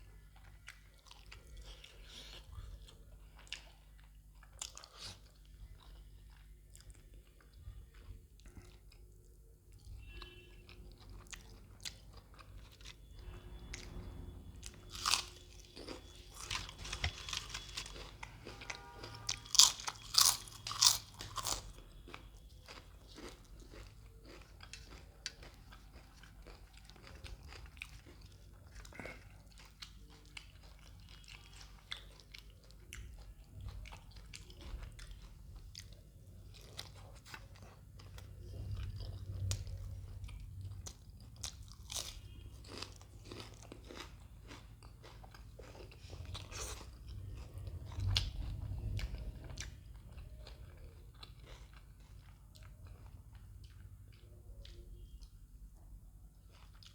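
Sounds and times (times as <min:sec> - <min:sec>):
person chewing: 0:00.0 - 0:55.4, 0:56.4 - 0:56.9
crunching bites: 0:14.9 - 0:21.8.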